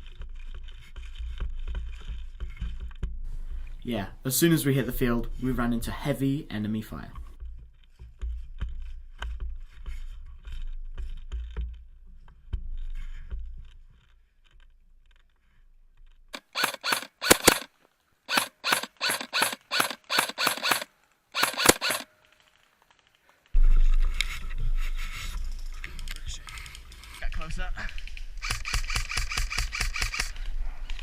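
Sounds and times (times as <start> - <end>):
airsoft rifle bursts: 16.4 - 22.6, 28.4 - 30.5
low rumble: 23.6 - 28.4.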